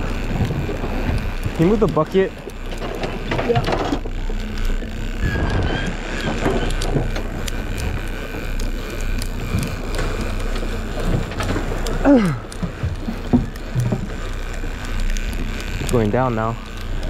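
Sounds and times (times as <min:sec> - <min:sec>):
boat motor rumbling: 0:00.0 - 0:17.0
water noise: 0:00.0 - 0:17.0
wind: 0:00.0 - 0:17.0.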